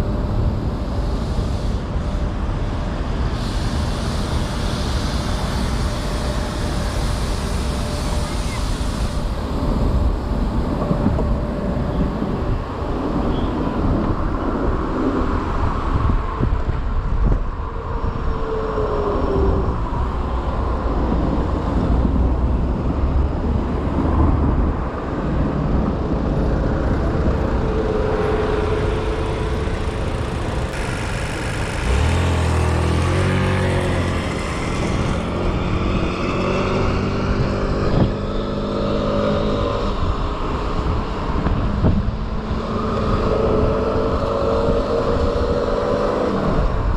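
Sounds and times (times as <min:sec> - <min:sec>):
cars passing: 0:00.0 - 0:46.9
wind and tyre rumble: 0:00.0 - 0:46.9
vehicle engine running low: 0:19.2 - 0:46.9.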